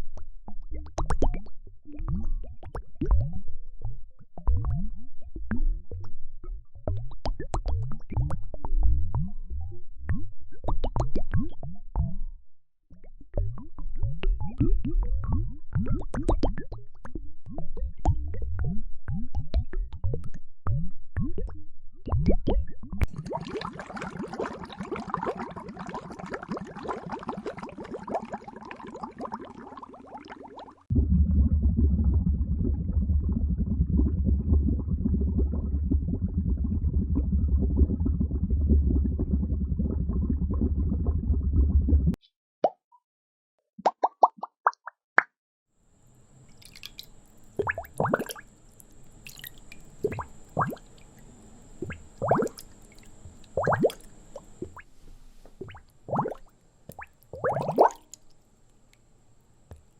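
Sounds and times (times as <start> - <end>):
water bubbling: 22.2 - 42.2, 46.4 - 54.9, 55.6 - 58.2.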